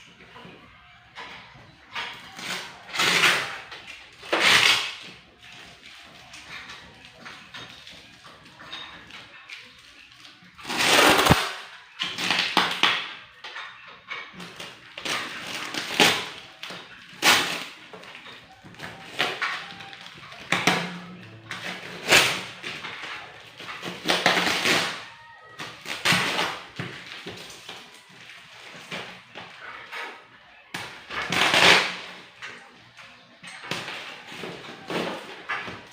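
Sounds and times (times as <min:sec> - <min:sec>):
box packaging rustling and tearing: 0:10.6 - 0:12.5.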